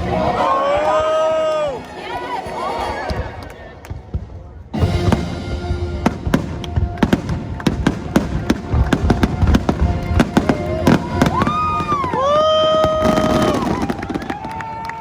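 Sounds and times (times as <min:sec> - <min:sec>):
fireworks show music: 0:02.7 - 0:14.8
fireworks bangs and crackles: 0:03.8 - 0:15.0.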